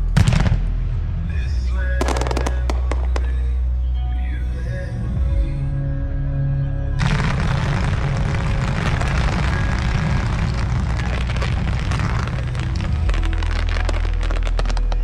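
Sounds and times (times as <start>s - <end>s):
music: 0.0s - 15.0s
fireworks crackling and banging: 1.9s - 3.6s, 7.0s - 15.0s
fireworks sharp pops: 2.0s - 3.4s, 7.0s - 15.0s.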